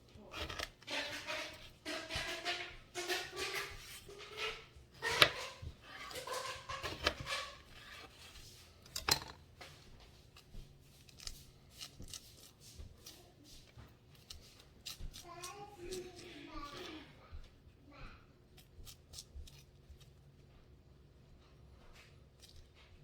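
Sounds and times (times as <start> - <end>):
knife cutting fruit on a board: 0.2 - 17.5.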